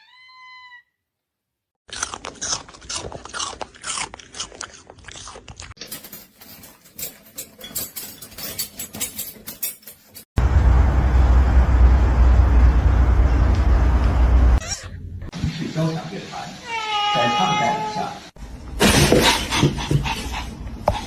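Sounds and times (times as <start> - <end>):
pet chewing and crunching: 1.9 - 7.3.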